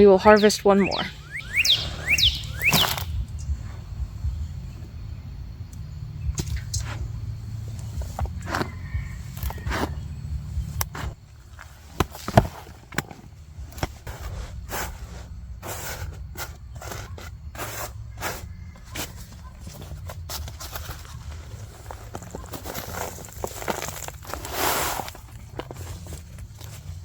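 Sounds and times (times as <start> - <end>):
steady low rumble: 0.0 - 15.6
hands digging through soil: 6.4 - 27.0.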